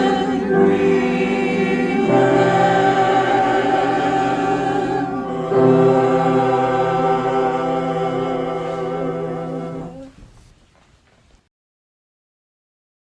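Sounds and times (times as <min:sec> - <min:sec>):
choir singing sustained chords: 0:00.0 - 0:10.1.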